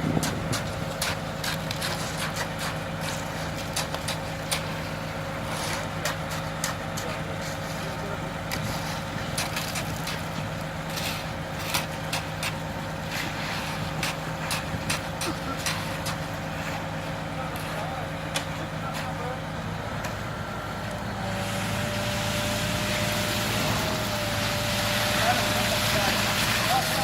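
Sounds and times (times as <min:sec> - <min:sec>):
engine running steadily: 0:00.0 - 0:27.0
sharp clicks and scrapes: 0:00.2 - 0:04.7.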